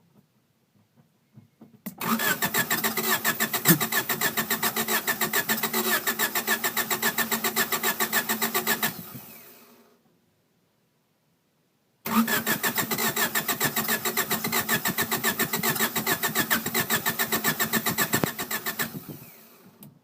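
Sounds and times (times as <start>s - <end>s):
car engine cranking without starting: 2.0s - 9.6s, 12.1s - 19.7s.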